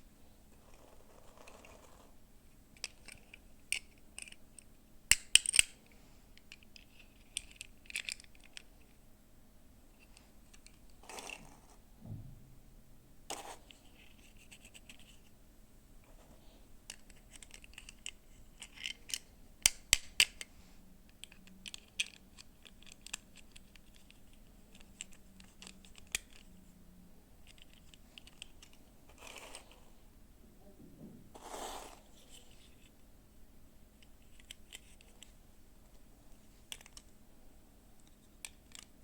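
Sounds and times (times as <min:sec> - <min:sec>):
plastic toy pieces clicking: 0:02.8 - 0:04.4, 0:05.1 - 0:05.8, 0:06.4 - 0:08.7, 0:16.9 - 0:20.5, 0:21.2 - 0:26.5, 0:36.7 - 0:37.1, 0:38.0 - 0:38.9.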